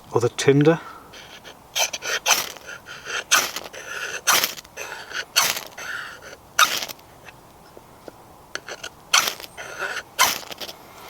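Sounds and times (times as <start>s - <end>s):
fire steel rod scraping: 1.1s - 7.8s, 8.6s - 11.0s.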